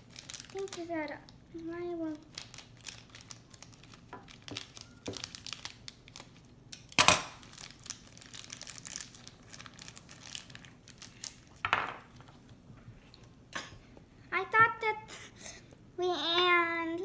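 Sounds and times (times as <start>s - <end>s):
plastic pack ripping: 0.0s - 0.9s, 2.2s - 11.6s
plastic packaging crinkling: 0.0s - 1.1s, 2.1s - 12.4s.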